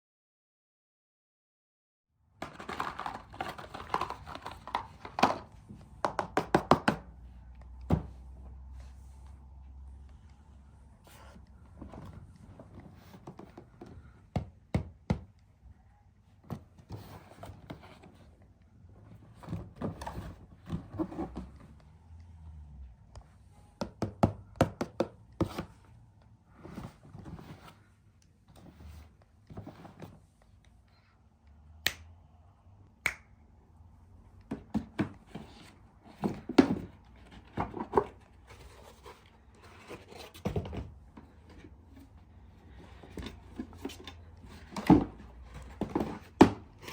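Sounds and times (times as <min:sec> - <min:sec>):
hands tapping and scratching objects: 0:02.4 - 0:07.9.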